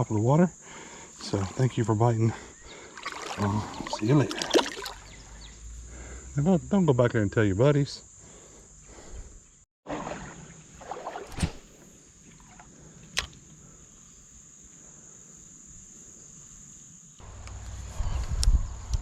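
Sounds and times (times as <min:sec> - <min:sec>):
high insect drone: 0:00.0 - 0:09.6, 0:10.2 - 0:19.0
water handling noises: 0:02.7 - 0:05.2, 0:09.9 - 0:11.7.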